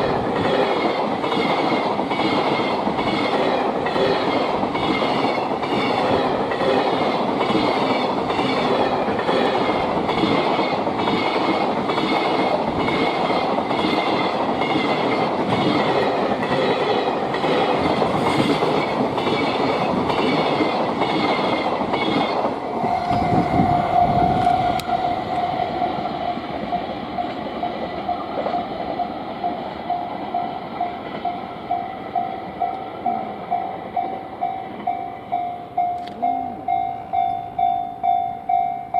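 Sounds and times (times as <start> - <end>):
train wheels clacking: 0.0 - 38.9
crossing warning bell: 20.3 - 38.9.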